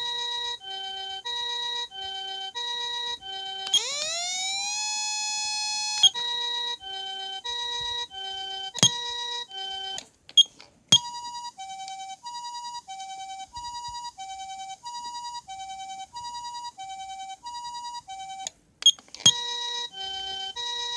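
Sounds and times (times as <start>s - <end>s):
two-tone electronic siren: 0.0s - 10.0s
sharp clicks: 3.6s - 6.3s.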